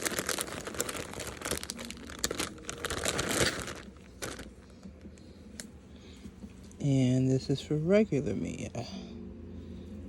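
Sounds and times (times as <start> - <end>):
packaging crinkling and rustling: 0.0 - 5.1.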